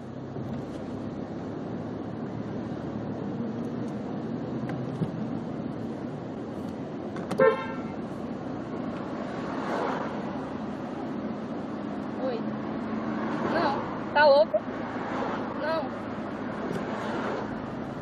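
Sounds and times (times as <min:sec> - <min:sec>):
street traffic noise: 0:00.0 - 0:18.0
car horn toot: 0:07.3 - 0:08.0.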